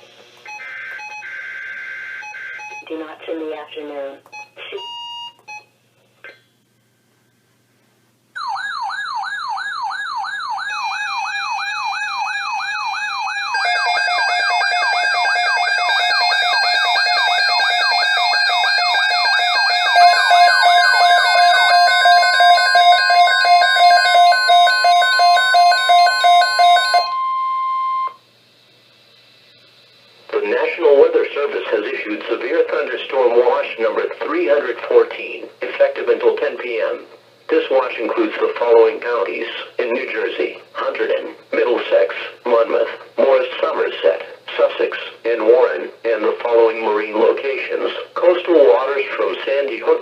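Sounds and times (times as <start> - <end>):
steady alarm tones: 0.5 - 5.7, 8.4 - 28.2
electronic siren sweeping: 0.6 - 2.9, 8.4 - 28.2
steady high tone: 8.4 - 28.2.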